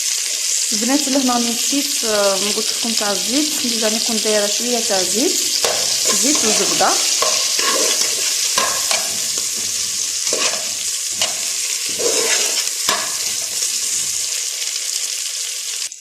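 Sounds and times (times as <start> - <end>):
vegetables sizzling in a pot: 0.0 - 16.0
spoon stirring and scraping: 5.3 - 14.4.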